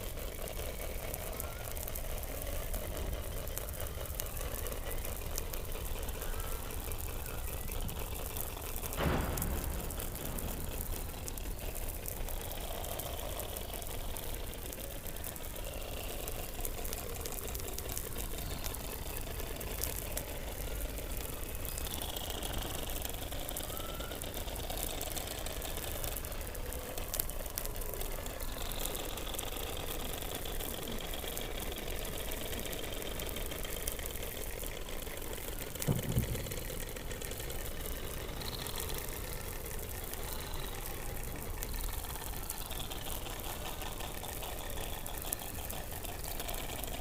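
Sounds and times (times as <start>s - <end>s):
fine clicking: 0.0s - 47.0s
low thump: 8.8s - 12.3s
seal whistles underwater: 23.6s - 24.3s.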